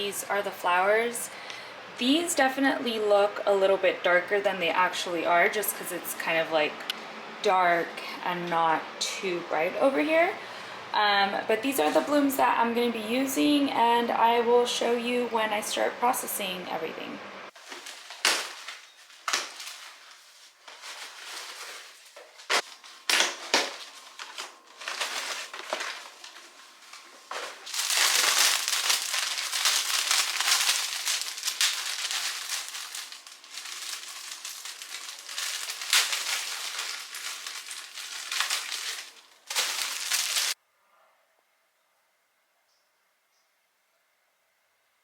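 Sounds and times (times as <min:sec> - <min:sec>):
flower wrappings crinkling: 0:17.5 - 0:40.6.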